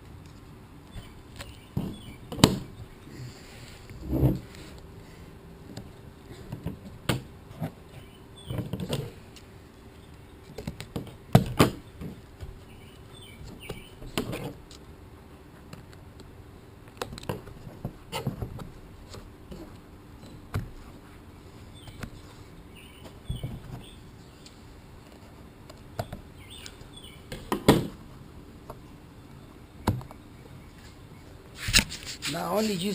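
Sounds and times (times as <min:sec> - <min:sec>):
faint steady hum: 0:00.0 - 0:32.9
rustling: 0:30.7 - 0:32.9.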